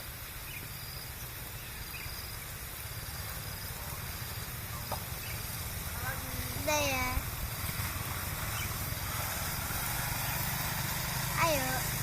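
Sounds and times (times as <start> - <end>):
insects chirping: 0.0 - 12.0
low rumble of outdoor noise: 0.0 - 12.0.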